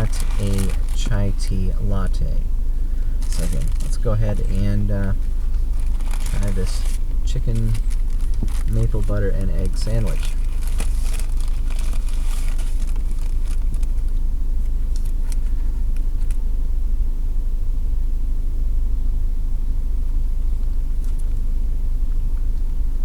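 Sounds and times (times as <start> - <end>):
faint clicks and rustles: 0.0 - 1.5, 3.2 - 16.4
car cabin rumble: 0.0 - 23.0.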